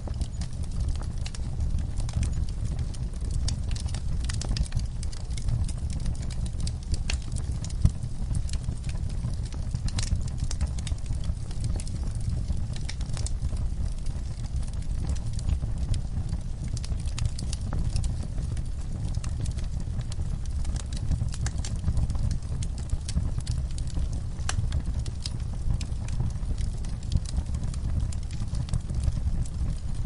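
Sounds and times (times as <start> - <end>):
wood fire crackling: 0.0 - 30.0.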